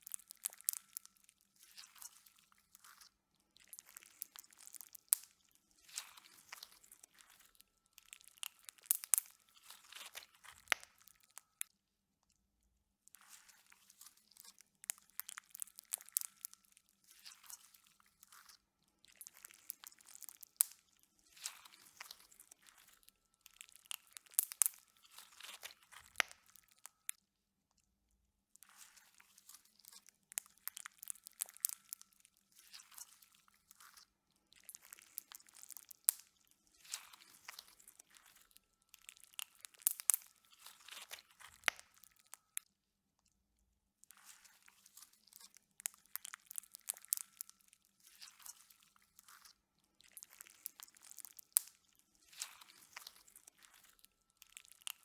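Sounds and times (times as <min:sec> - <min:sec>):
slime squishing with crackling clicks: 0:00.0 - 0:11.7, 0:13.1 - 0:27.2, 0:28.6 - 0:42.7, 0:44.0 - 0:55.0.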